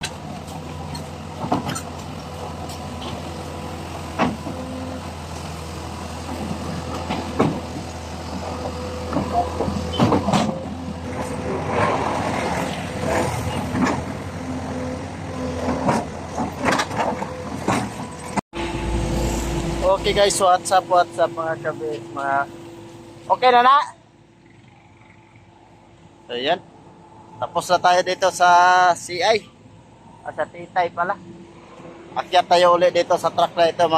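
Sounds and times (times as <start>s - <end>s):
heavy vehicle engine running: 0.0s - 33.9s
sharp knocks and clanks: 6.3s - 12.0s, 15.6s - 18.4s.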